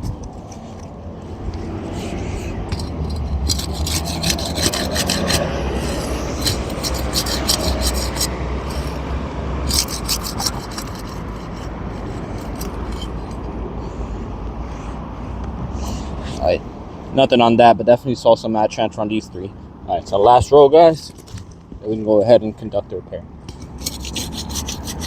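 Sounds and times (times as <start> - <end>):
steady low rumble: 0.0 - 17.2
pry tool scraping shingles: 1.5 - 13.6, 23.5 - 25.0.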